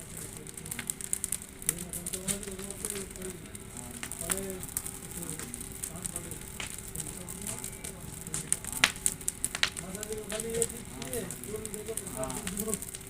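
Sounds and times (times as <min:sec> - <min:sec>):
faint voices: 0:00.0 - 0:13.0
fire crackling and popping: 0:00.0 - 0:13.0
steady thin hum: 0:00.0 - 0:13.0.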